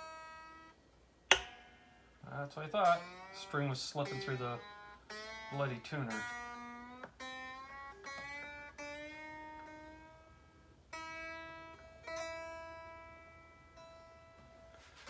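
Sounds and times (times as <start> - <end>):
electric guitar strings plucked: 1.3 - 14.8.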